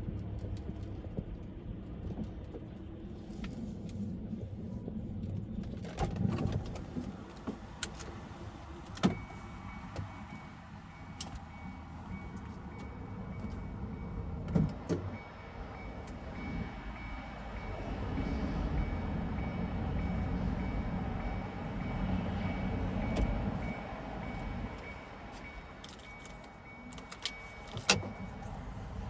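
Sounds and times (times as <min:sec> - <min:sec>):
car engine and tyre rumble: 0:00.0 - 0:29.0
faint high beeping: 0:15.2 - 0:28.5.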